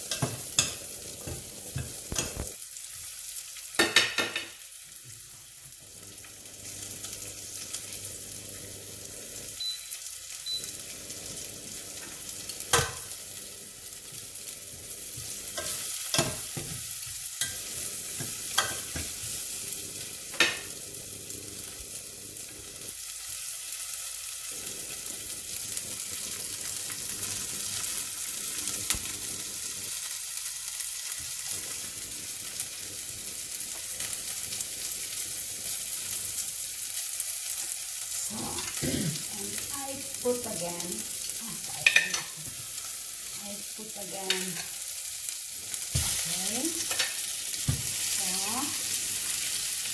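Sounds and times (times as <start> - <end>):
food sizzling in a pan: 0.0 - 49.9
utensil clicking against pan: 41.8 - 42.4.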